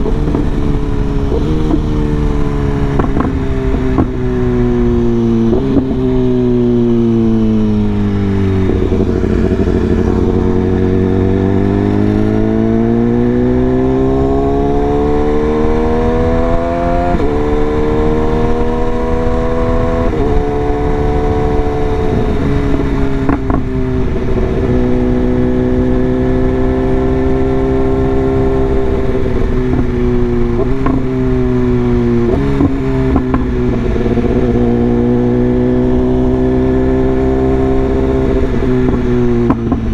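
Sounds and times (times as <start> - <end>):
gear changes: 0.0 - 39.9
motorcycle engine revving: 0.0 - 39.9.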